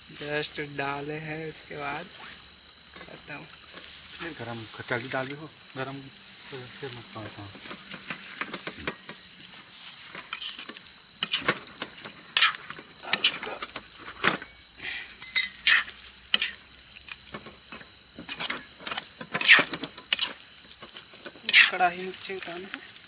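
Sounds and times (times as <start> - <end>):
high-pitched gas hiss: 0.0 - 23.0
metal cookware knocks and scrapes: 15.2 - 16.5.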